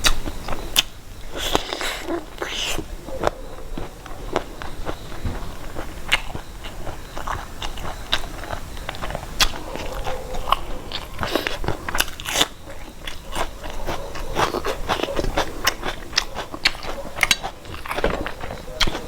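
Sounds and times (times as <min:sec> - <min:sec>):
person chewing crunchy food: 0:00.0 - 0:19.0.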